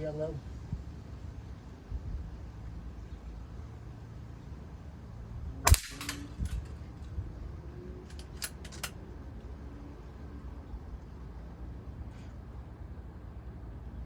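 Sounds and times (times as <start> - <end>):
air rifle shot crack: 5.7 - 6.8.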